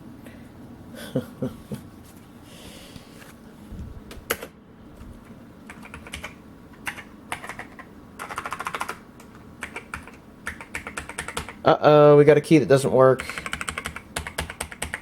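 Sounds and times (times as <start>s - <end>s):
mechanical keyboard typing: 5.7s - 11.6s, 13.2s - 15.0s.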